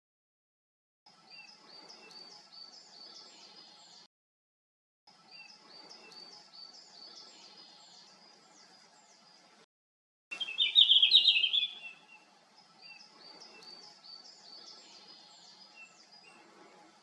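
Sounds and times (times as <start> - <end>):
songbird singing: 1.1 - 4.1, 5.2 - 9.6, 10.3 - 17.0
forest hush: 10.4 - 17.0.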